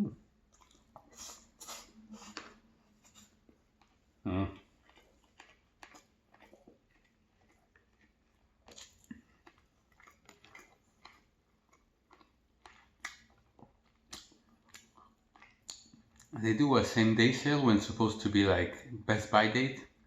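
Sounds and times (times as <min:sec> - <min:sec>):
person chewing: 0:00.4 - 0:16.5
mouth clicks and smacks: 0:00.5 - 0:16.4.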